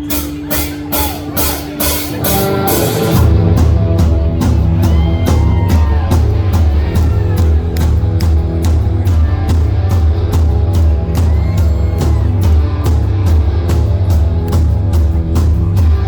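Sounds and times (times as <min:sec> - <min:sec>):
live hard rock band playing: 0:00.0 - 0:16.0
steady drum beat: 0:00.0 - 0:16.0.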